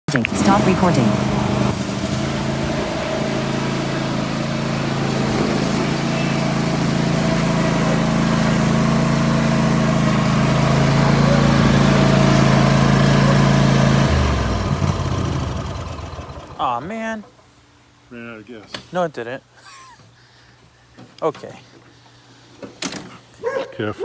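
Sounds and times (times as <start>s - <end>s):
lawn mower engine running: 0.1s - 17.0s.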